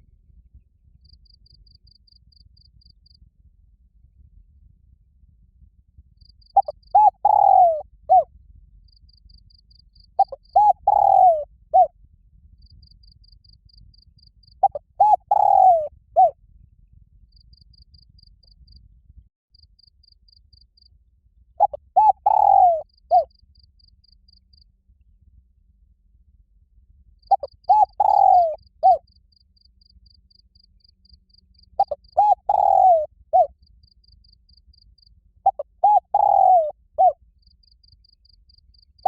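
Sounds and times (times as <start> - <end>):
cricket chirping faintly: 0.5 - 3.5, 5.9 - 16.4, 17.1 - 24.9, 27.0 - 39.0
dove cooing: 6.6 - 8.3, 10.2 - 11.9, 14.6 - 16.3, 21.6 - 23.3, 27.3 - 29.0, 31.8 - 33.5, 35.5 - 37.2.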